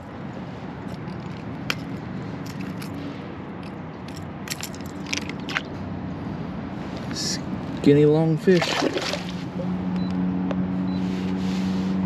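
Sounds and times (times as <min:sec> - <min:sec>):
handling clicks and scrapes: 0:00.8 - 0:05.8.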